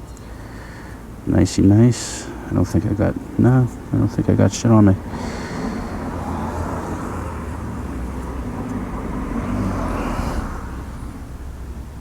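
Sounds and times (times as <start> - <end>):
motor vehicle noise: 0.0 - 12.0.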